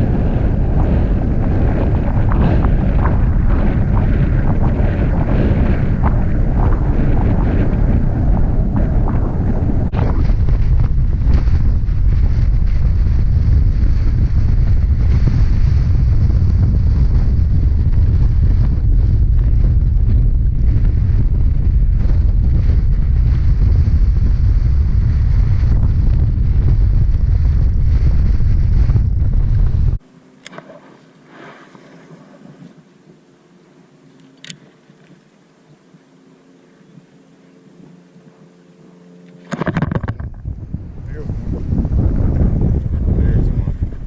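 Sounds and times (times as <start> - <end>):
wind buffeting microphone: 0.0 - 30.0, 39.4 - 44.0.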